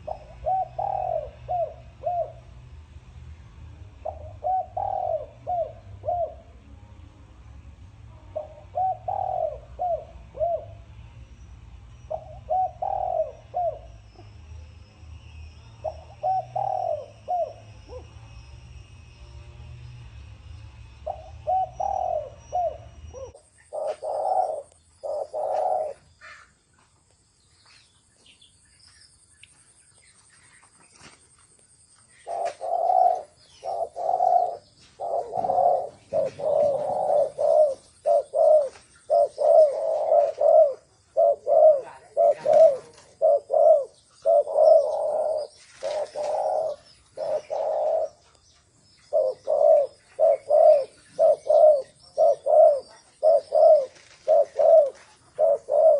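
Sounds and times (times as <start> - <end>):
dove cooing: 0.0 - 2.6, 3.9 - 6.7, 8.2 - 11.0, 12.1 - 14.3, 15.8 - 18.4, 21.0 - 26.5, 32.1 - 55.9.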